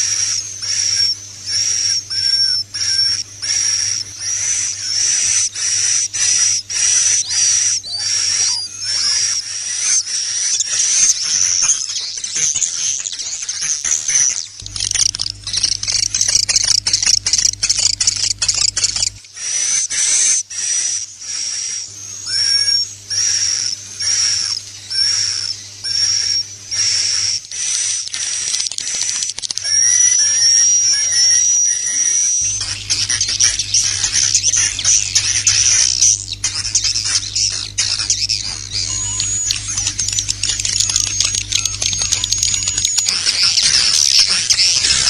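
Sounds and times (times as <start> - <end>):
swiftlet chirping and twittering: 0.0 - 45.0
whistled bird calls: 0.0 - 45.0
low steady hum: 14.6 - 19.2, 32.4 - 45.0.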